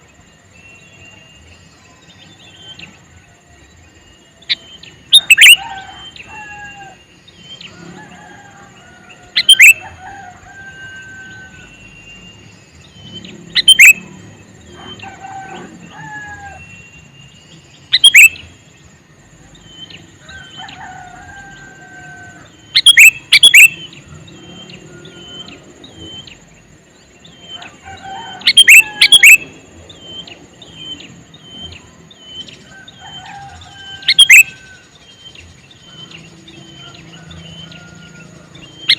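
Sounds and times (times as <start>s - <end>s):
bird chirps and warbled phrases: 13.0s - 14.2s, 17.8s - 18.5s, 22.6s - 23.8s, 28.4s - 29.4s
bird calling sharply: 13.6s - 14.0s, 18.0s - 18.4s, 22.8s - 23.8s, 28.4s - 29.4s, 34.0s - 34.6s.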